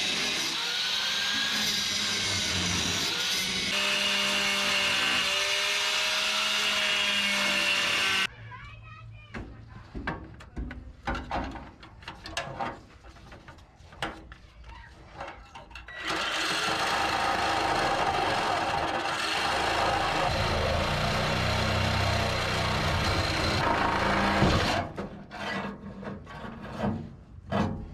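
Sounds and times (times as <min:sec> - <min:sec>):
power tool cutting sheet steel: 0:00.0 - 0:08.3, 0:16.0 - 0:25.0.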